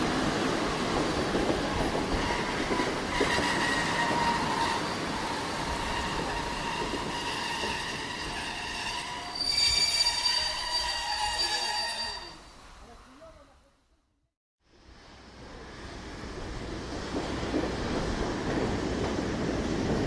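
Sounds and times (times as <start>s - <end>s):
tram rumbling on rails: 0.0s - 13.4s, 14.7s - 20.0s
tram wheels squealing: 1.7s - 12.6s.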